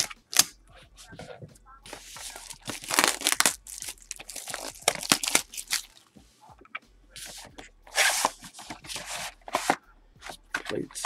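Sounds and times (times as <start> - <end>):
packaging tearing and crinkling: 0.0 - 0.5, 2.2 - 6.0.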